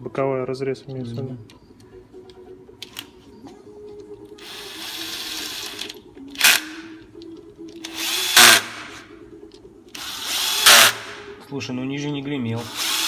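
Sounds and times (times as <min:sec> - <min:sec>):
power tool bursts: 0:07.9 - 0:09.0, 0:10.1 - 0:11.3.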